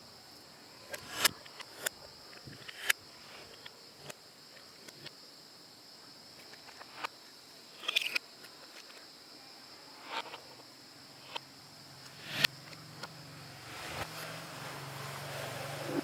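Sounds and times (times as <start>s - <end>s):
faint high-pitched whine: 0.0s - 16.0s.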